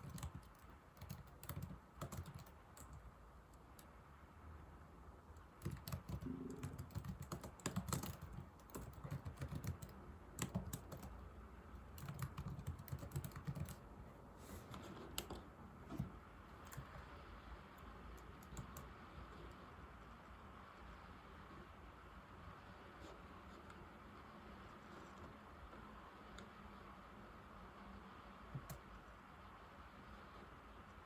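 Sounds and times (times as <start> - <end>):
laptop keyboard typing: 0.0 - 3.9, 5.3 - 13.9, 14.6 - 19.7, 28.4 - 29.2.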